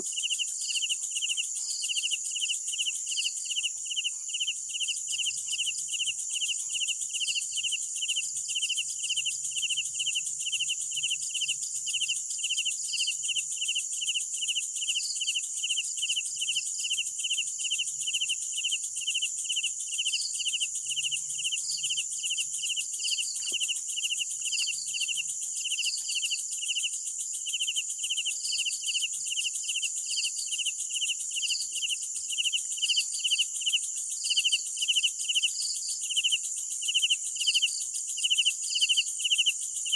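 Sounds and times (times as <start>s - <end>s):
crickets chirping: 0.0s - 39.9s
high-pitched insect trill: 0.0s - 39.9s.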